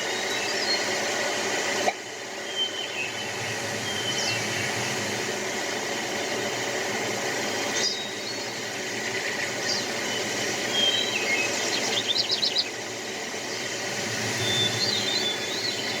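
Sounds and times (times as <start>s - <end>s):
songbirds chirping and whistling: 0.0s - 1.4s, 2.3s - 4.6s, 7.6s - 16.0s
steady background hum: 0.0s - 16.0s.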